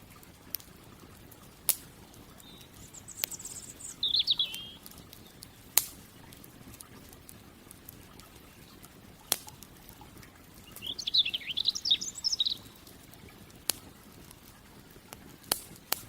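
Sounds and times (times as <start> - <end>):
campfire crackling and popping: 0.0 - 16.0
songbird trilling: 2.4 - 5.8, 10.6 - 12.9.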